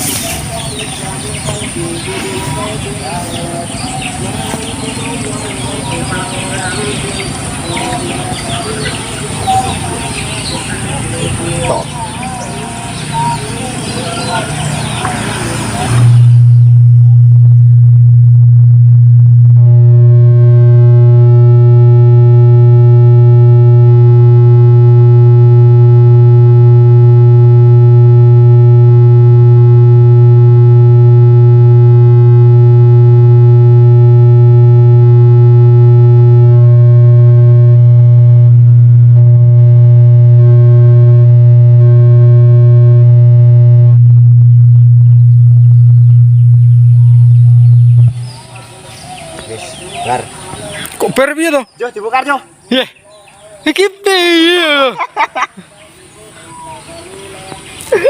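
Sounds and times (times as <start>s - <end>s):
low test tone: 15.5s - 48.5s
higher steady tone: 15.8s - 48.4s.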